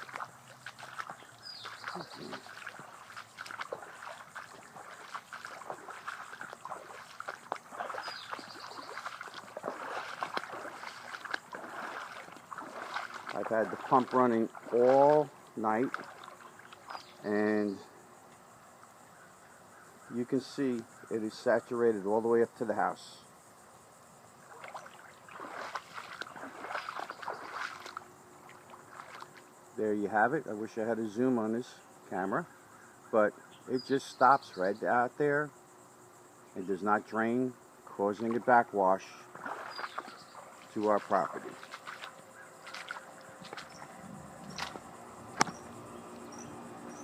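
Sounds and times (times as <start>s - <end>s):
water trickling and splashing: 0.0s - 17.5s, 24.4s - 29.8s, 38.1s - 47.0s.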